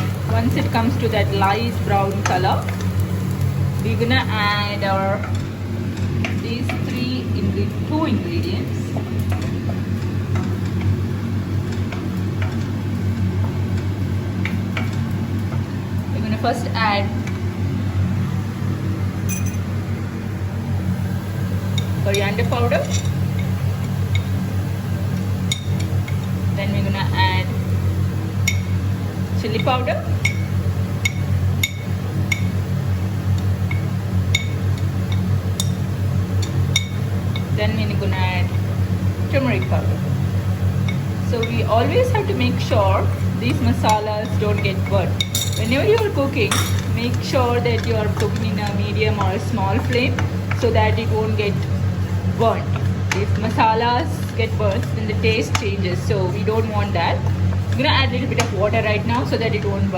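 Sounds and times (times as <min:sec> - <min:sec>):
low kitchen hum: 0:00.0 - 0:59.9
onions frying in oil: 0:00.0 - 0:59.9
spoon clinking against glass bowl: 0:19.3 - 0:19.6.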